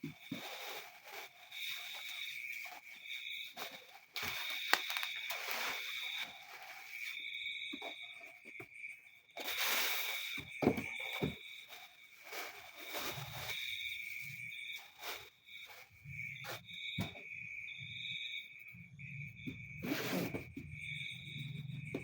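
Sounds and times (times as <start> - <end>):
rustling: 0.2 - 7.2, 11.0 - 15.8
steady high chirping tone: 1.3 - 19.8, 20.6 - 22.0.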